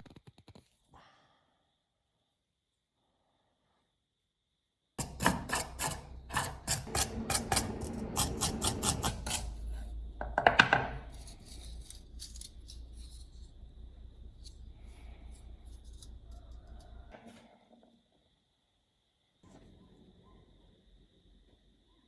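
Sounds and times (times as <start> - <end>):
hand tool clicks and scrapes: 5.0 - 9.6, 11.0 - 13.6, 15.6 - 17.0.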